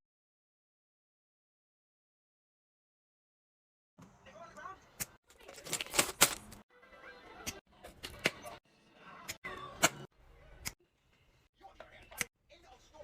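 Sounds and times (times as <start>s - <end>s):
background music: 6.4s - 12.3s.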